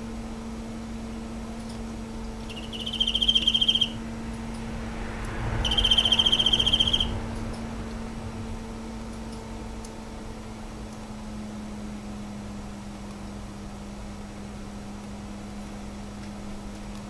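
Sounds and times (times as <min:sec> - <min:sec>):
low steady hum: 0:00.0 - 0:17.0
cricket trilled chirps: 0:02.3 - 0:04.1, 0:05.6 - 0:07.2.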